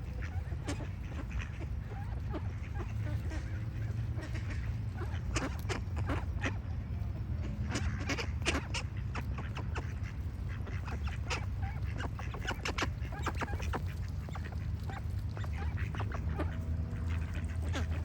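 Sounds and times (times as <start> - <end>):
ducks quacking: 0.0 - 18.0.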